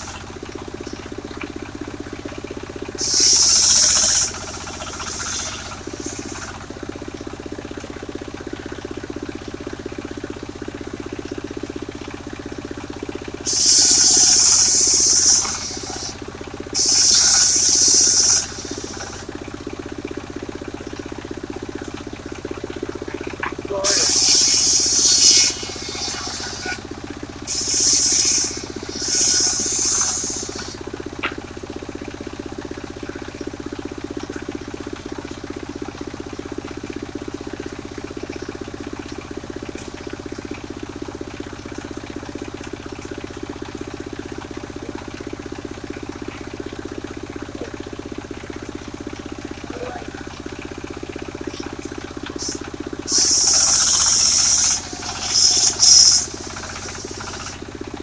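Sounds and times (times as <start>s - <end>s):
sawmill droning: 0.0s - 58.0s
bursts of high hiss: 3.0s - 6.5s, 13.5s - 16.2s, 16.8s - 19.2s, 23.8s - 26.8s, 27.5s - 30.8s, 52.4s - 57.6s.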